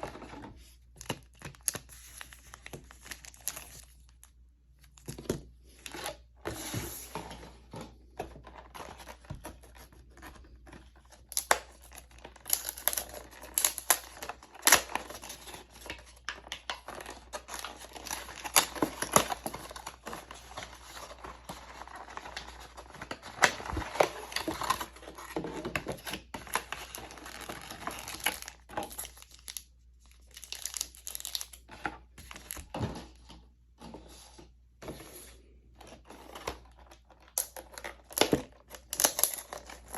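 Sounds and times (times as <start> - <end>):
packaging tearing and crinkling: 11.2 - 15.9, 36.4 - 39.9.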